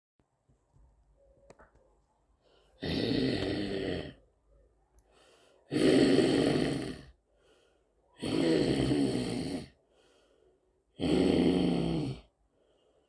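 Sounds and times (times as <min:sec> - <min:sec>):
faint breathing: 0:02.3 - 0:02.8, 0:05.0 - 0:05.7, 0:07.1 - 0:08.6, 0:09.6 - 0:11.0, 0:12.2 - 0:13.0
person snoring: 0:02.8 - 0:04.2, 0:05.6 - 0:07.2, 0:08.2 - 0:09.8, 0:10.9 - 0:12.3.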